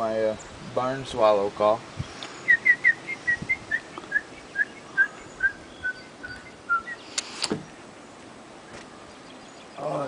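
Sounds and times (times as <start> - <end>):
man whistling bird chirps: 2.4 - 7.2
sharp clicks: 7.1 - 7.6.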